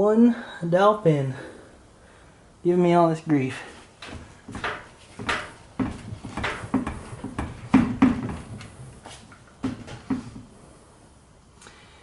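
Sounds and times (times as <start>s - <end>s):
metal knocks and clunks: 4.0s - 10.5s.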